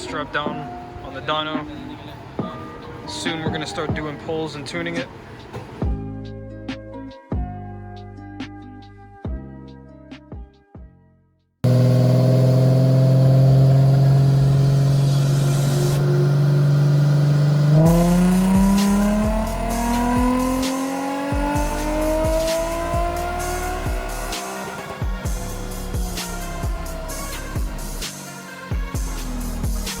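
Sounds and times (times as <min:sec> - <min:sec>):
car engine revving on dyno: 0:11.6 - 0:30.0.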